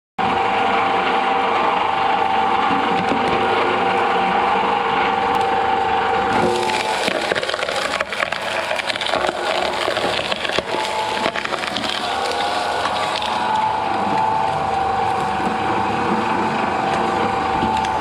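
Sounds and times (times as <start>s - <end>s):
shredder machine running: 0.2s - 18.0s
material cracking and crunching: 6.4s - 14.3s.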